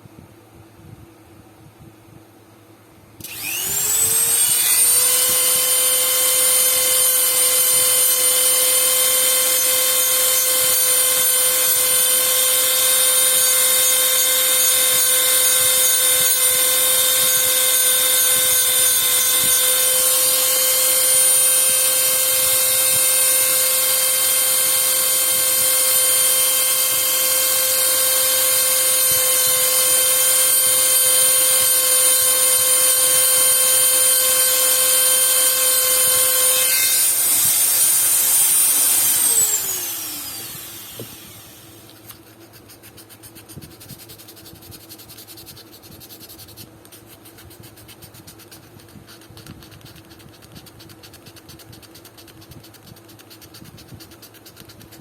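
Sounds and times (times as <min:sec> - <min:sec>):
electric power tool whining: 0:03.2 - 0:42.1.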